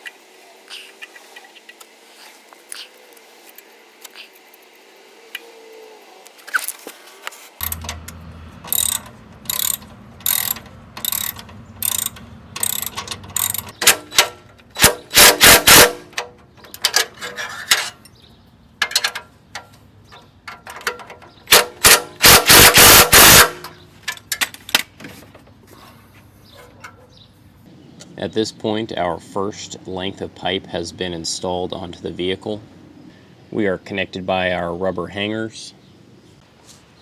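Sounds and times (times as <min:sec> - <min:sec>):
hand ratchet clicking: 0:08.7 - 0:16.0.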